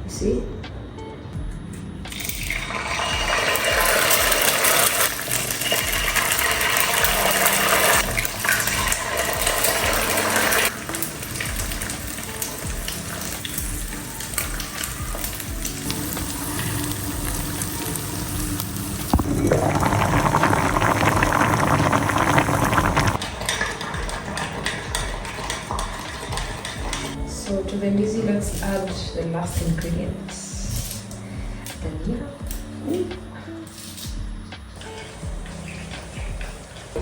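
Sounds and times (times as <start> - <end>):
food sizzling in a pan: 2.2 - 27.2.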